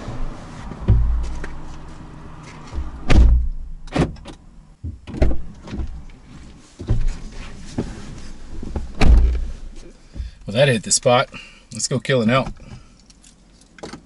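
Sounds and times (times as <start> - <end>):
dull knocks and thumps: 0.7 - 1.7, 2.6 - 4.2, 4.8 - 6.1, 6.8 - 8.0, 8.6 - 9.5, 10.1 - 10.4.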